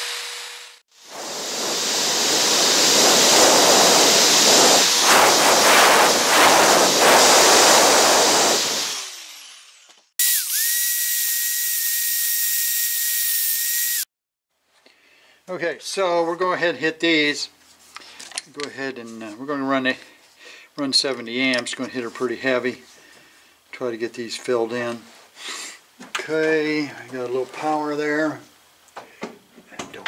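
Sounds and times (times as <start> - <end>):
power grinder grinding metal: 8.5 - 14.0.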